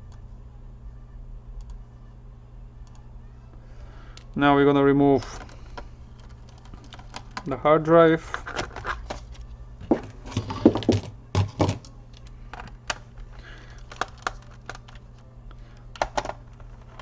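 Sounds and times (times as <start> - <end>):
faint steady hum: 0.0 - 17.0
laptop parts clicking and knocking: 13.8 - 15.0, 16.0 - 17.0.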